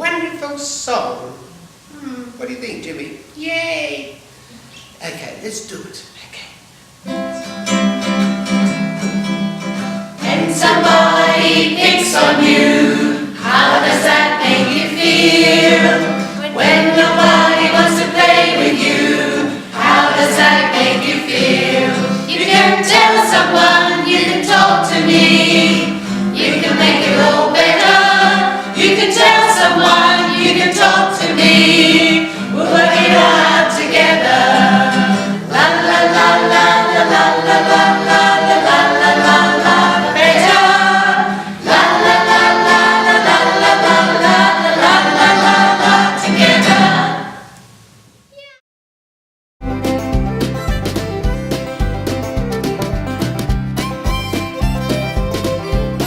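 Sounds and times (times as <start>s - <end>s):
strummed acoustic guitar: 7.1s - 13.9s, 49.6s - 56.0s
group singing a children's song: 10.2s - 47.6s.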